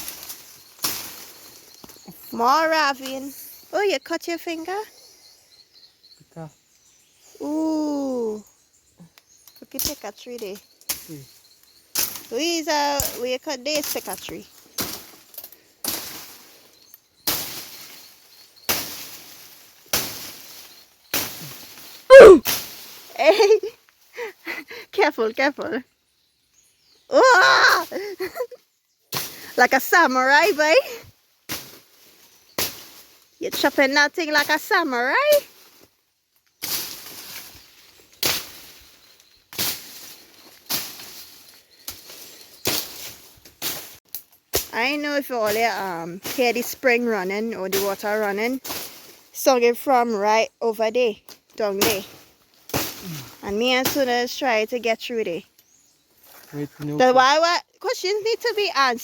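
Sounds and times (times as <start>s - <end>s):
rustle of cut vegetation: 0.0s - 3.7s, 6.8s - 24.8s, 27.5s - 49.8s, 51.0s - 57.1s
blade chopping into tree: 18.7s - 21.8s, 51.8s - 53.2s.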